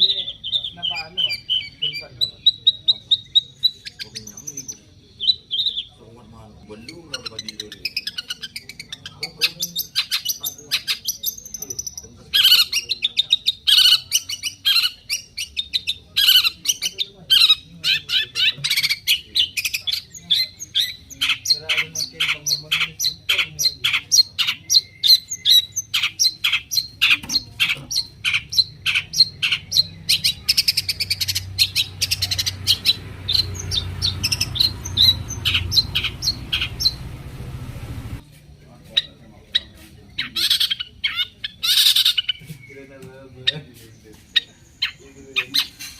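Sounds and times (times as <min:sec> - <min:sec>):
bird calling harsh notes: 0:00.0 - 0:38.2, 0:39.0 - 0:45.9.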